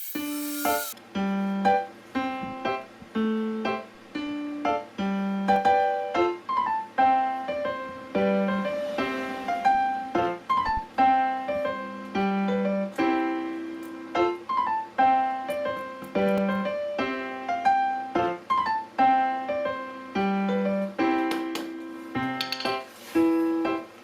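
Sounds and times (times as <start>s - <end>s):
piano melody: 0.0s - 24.0s.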